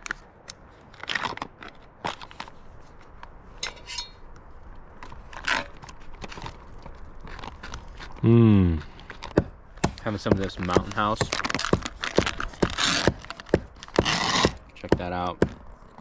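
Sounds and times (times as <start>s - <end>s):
campfire crackling and popping: 8.9s - 15.5s.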